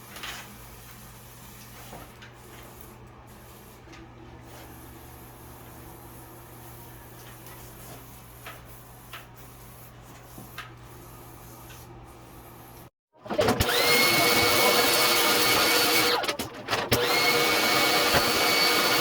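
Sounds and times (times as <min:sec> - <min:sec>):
pressure washer motor whining: 0:13.4 - 0:16.3.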